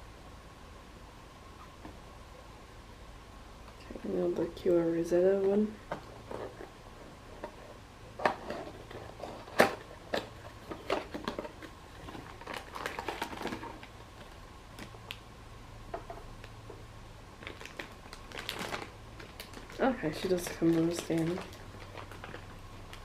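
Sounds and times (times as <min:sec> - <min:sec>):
plastic packaging crinkling: 0:06.0 - 0:15.2, 0:17.3 - 0:23.0.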